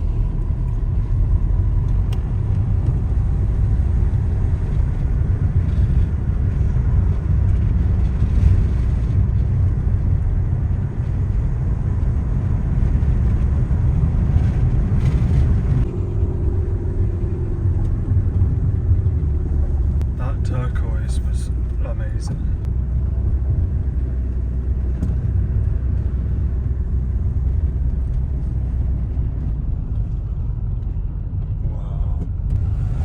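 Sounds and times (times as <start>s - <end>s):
car road and engine rumble: 0.0s - 33.0s.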